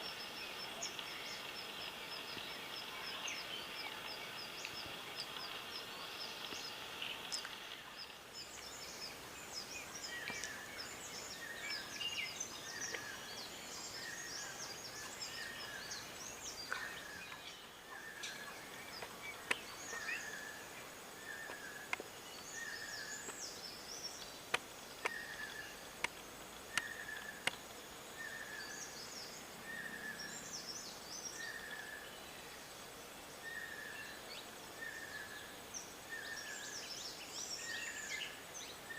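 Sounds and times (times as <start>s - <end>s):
steady outdoor hiss: 0.0s - 38.9s.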